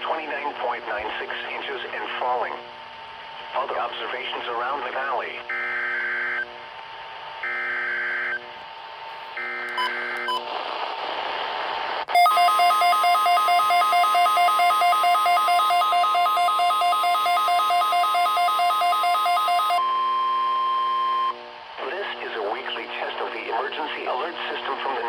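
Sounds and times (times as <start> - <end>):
rapidly pulsing alert tone: 12.2 - 19.8.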